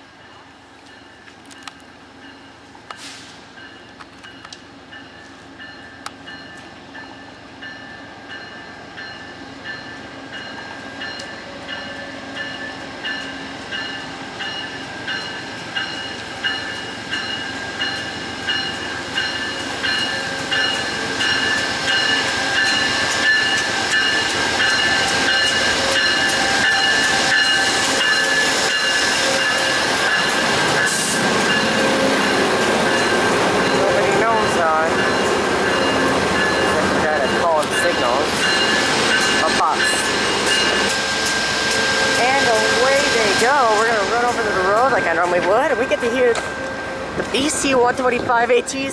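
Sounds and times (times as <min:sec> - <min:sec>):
passenger train approaching: 0:00.0 - 0:48.9
train wheels clicking over rail joints: 0:02.8 - 0:46.6.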